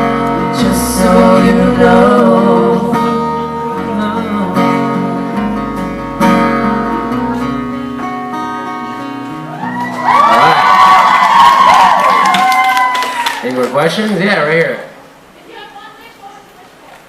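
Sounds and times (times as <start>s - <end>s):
guitar chords strummed: 0.0s - 9.6s
audience cheering: 9.4s - 13.9s.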